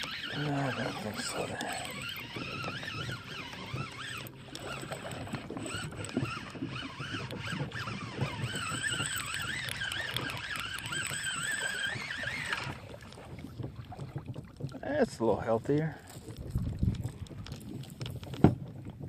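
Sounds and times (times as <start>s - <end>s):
fishing reel gears whining: 0.0s - 13.1s
wind and water rumble: 0.0s - 19.0s.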